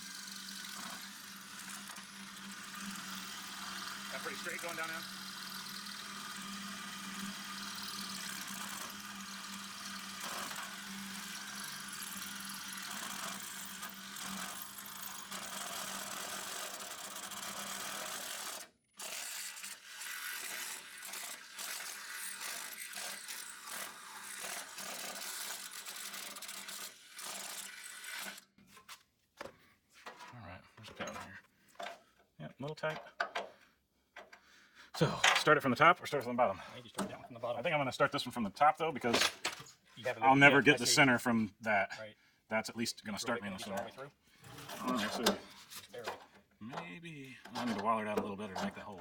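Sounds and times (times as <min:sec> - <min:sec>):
power drill boring into steel: 0:00.0 - 0:28.4.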